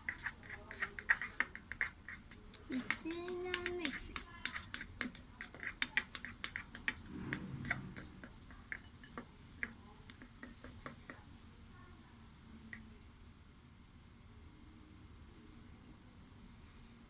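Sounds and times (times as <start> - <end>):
utensil clicking against bowl: 0.0 - 11.4.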